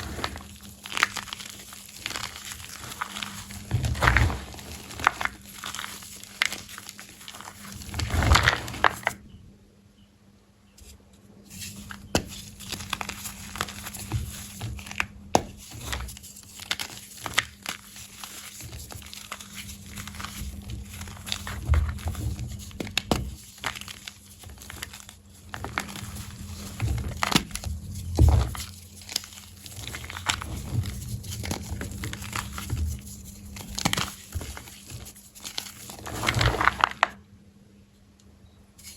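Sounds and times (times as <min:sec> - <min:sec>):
chalk blocks crunching: 0:00.0 - 0:09.2, 0:11.5 - 0:37.2.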